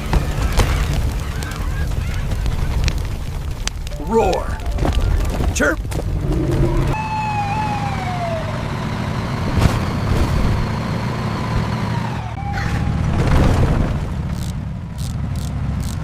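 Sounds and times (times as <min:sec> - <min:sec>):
vehicle engine rumbling: 0:00.0 - 0:16.0
siren-like wail sliding down: 0:06.5 - 0:10.0, 0:11.9 - 0:13.3.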